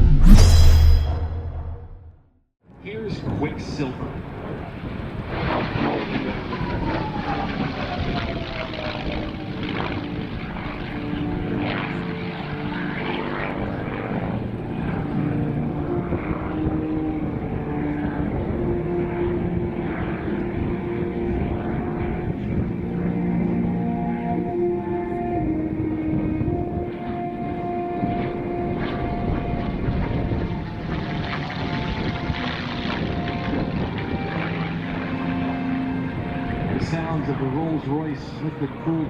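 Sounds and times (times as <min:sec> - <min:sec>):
propeller plane engine: 0:02.7 - 0:39.0.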